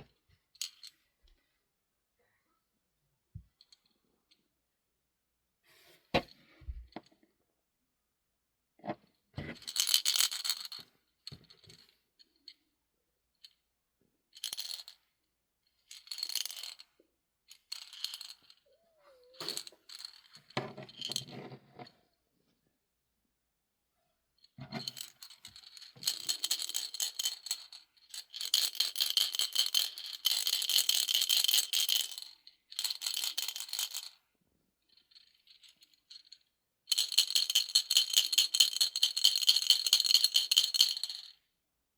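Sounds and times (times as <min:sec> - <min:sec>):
toy rattle jingling: 0:09.6 - 0:10.8, 0:15.9 - 0:16.8, 0:17.5 - 0:20.3, 0:24.8 - 0:34.2, 0:36.9 - 0:41.3.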